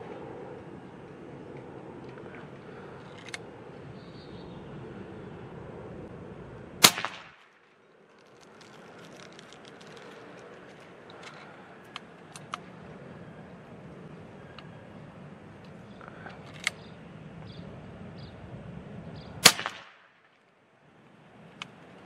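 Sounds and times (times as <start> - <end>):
air rifle shot: 6.8 - 7.6, 19.4 - 20.2
faint clicks: 21.5 - 22.0.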